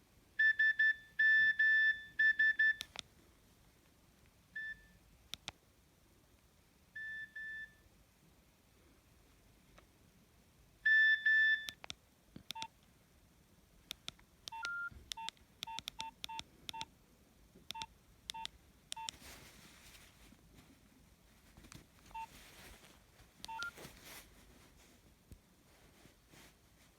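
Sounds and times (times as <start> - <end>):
phone key-tone beeps: 0.4 - 2.9, 7.0 - 7.8, 10.9 - 11.8, 14.5 - 16.9, 17.7 - 19.2, 23.4 - 23.8.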